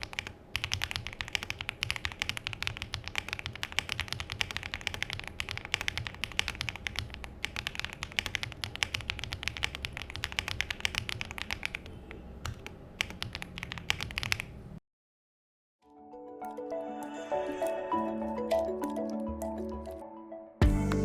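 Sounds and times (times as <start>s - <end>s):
mechanical keyboard typing: 0.0s - 14.6s, 18.4s - 20.0s.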